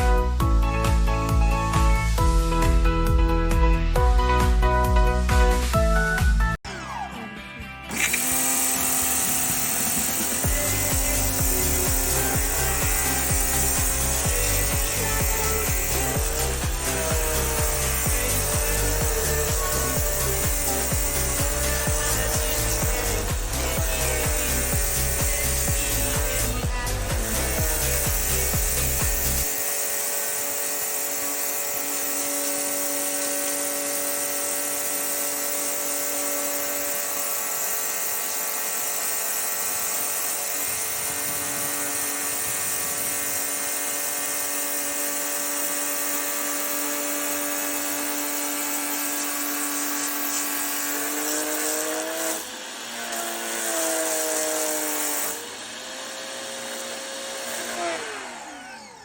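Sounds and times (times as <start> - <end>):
pressure washer motor whine: 7.9 - 29.4, 55.4 - 59.0.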